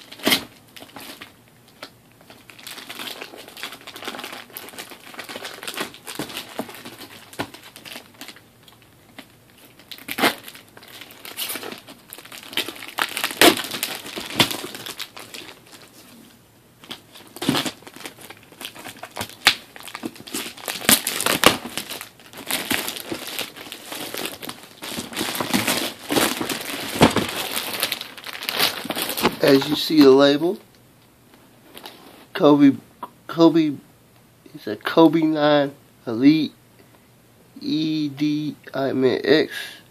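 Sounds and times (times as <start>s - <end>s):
packaging tearing: 0.0s - 15.9s, 16.8s - 29.9s
packaging crinkling and crumpling: 0.0s - 30.3s.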